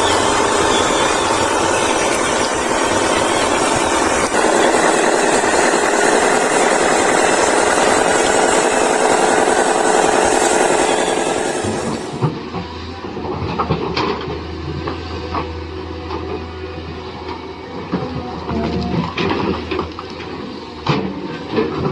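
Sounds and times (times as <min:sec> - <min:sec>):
toy electric motor whirring: 0:00.0 - 0:12.2.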